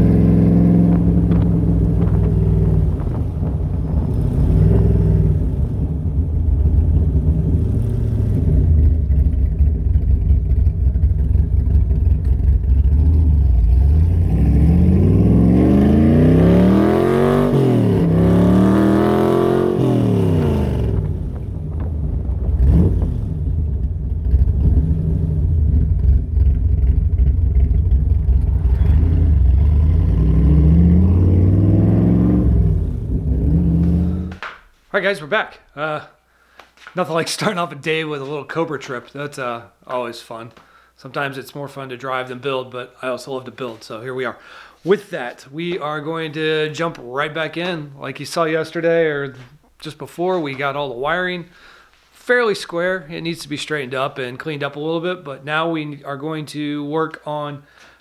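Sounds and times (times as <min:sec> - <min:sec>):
car engine revving: 0:00.0 - 0:34.5.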